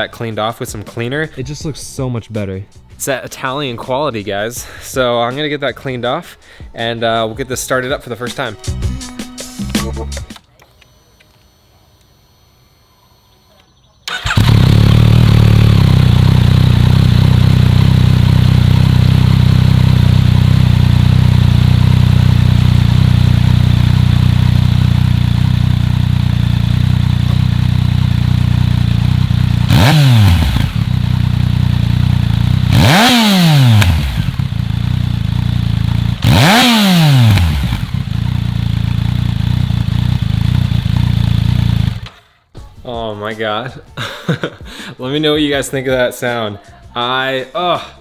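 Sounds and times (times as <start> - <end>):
motorcycle engine starting and idling: 10.6 - 42.3
motorcycle engine revving: 12.4 - 42.3.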